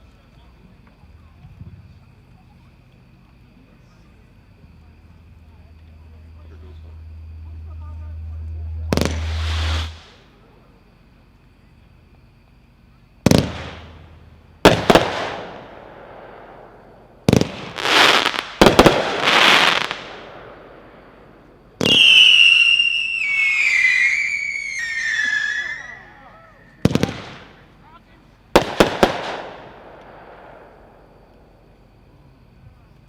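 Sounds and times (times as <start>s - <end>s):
firework whistle sliding down: 8.4s - 10.2s, 21.8s - 26.8s
firework bangs with crackling tails: 8.7s - 10.2s, 13.2s - 26.0s, 26.7s - 27.7s, 28.5s - 31.1s.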